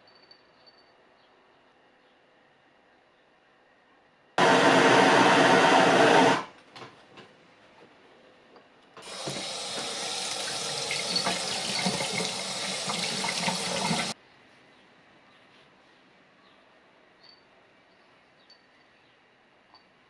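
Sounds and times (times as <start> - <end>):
tap water running and splashing: 9.0 - 14.2.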